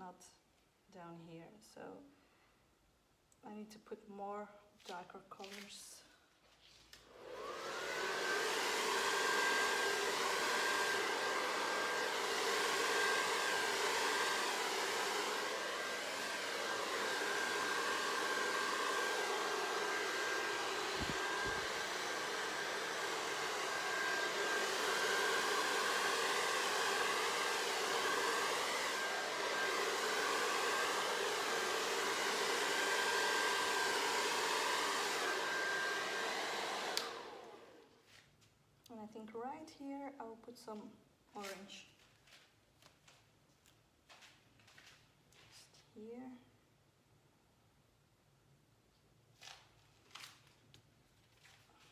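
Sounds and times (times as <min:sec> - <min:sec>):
hair dryer blowing: 0:07.0 - 0:38.0.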